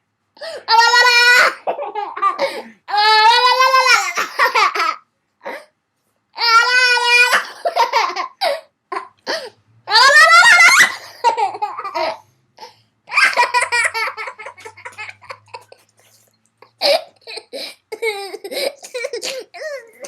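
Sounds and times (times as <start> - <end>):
young children laughing: 13.1 - 15.9.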